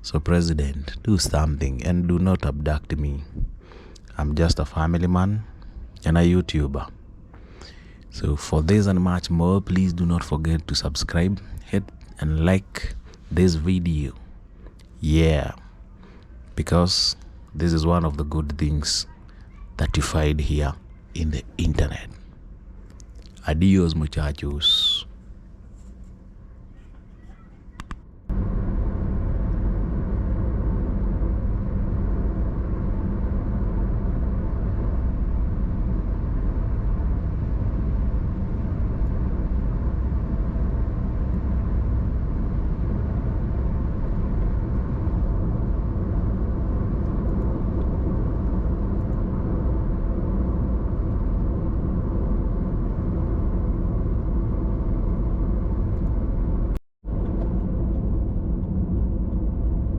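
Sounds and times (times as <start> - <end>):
car engine and road noise: 27.8 - 59.9.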